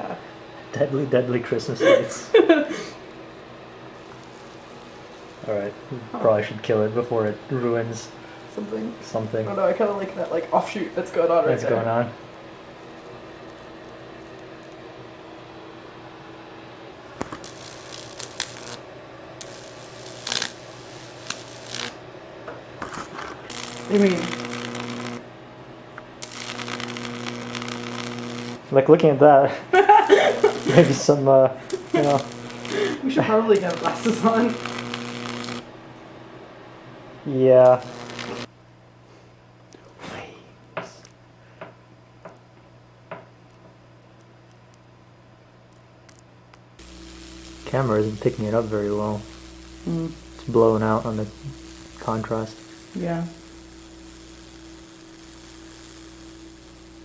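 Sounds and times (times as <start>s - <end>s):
low electrical hum: 0.0s - 57.0s
wood crackling and sizzling: 1.8s - 16.1s, 17.0s - 36.1s, 36.7s - 38.5s, 46.8s - 57.0s.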